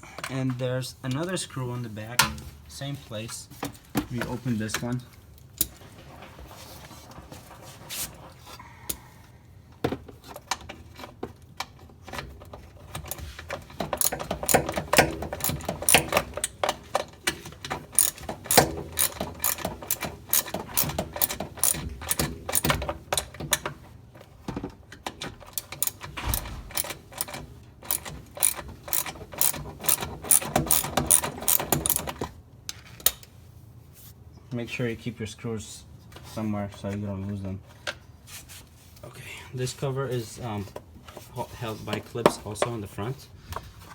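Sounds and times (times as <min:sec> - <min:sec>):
ratchet wrench clicking: 0:13.9 - 0:16.5, 0:17.9 - 0:23.3, 0:25.6 - 0:32.2.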